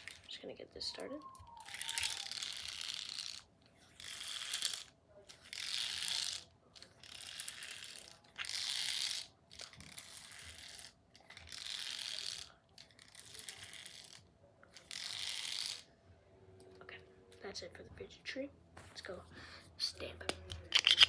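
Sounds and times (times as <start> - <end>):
fidget toy ratcheting clicks: 0.0 - 0.3, 1.0 - 15.9, 20.5 - 21.0.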